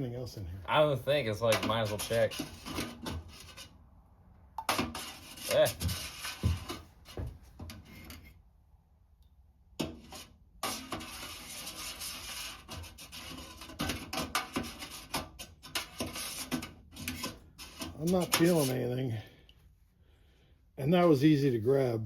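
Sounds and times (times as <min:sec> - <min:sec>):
scraping and rubbing inside a can: 0:01.1 - 0:04.0, 0:04.7 - 0:08.4, 0:09.8 - 0:19.0.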